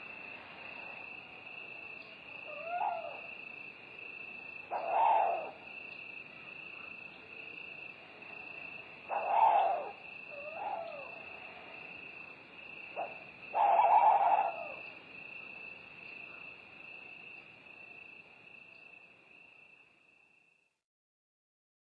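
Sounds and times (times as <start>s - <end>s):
crickets trilling: 0.0s - 20.2s
faint animal call: 0.8s - 3.6s, 4.6s - 5.8s, 8.3s - 12.0s, 12.9s - 15.6s
owl hooting: 2.4s - 3.3s, 4.7s - 5.8s, 9.1s - 11.3s, 13.0s - 14.9s.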